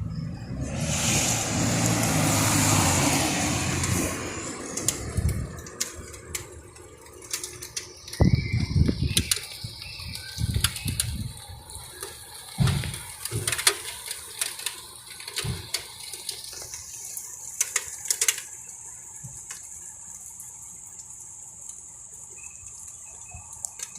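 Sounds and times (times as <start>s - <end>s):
wind gusting against microphone: 0.0s - 7.0s, 8.0s - 11.9s.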